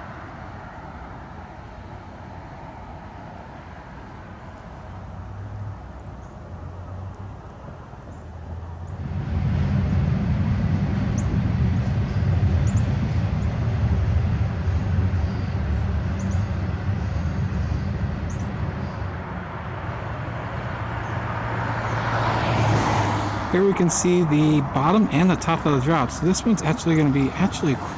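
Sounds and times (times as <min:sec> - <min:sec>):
heavy engine humming: 0:00.0 - 0:27.9.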